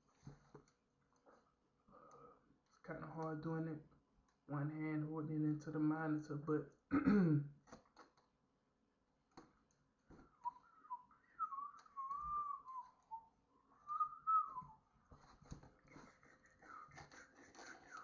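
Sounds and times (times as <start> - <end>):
person whistling a tune: 10.4 - 14.8
faint clicks: 11.6 - 13.3.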